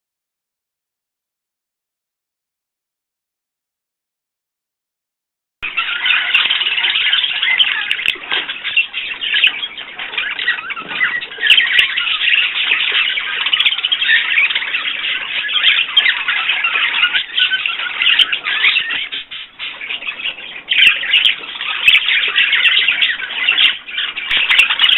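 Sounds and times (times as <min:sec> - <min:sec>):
pet birds chattering and chirping: 0:05.6 - 0:24.9.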